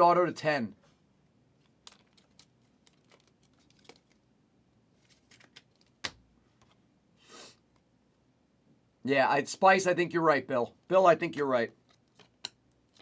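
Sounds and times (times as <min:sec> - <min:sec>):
trading cards clicking and rustling: 0:01.6 - 0:04.2, 0:11.8 - 0:13.0.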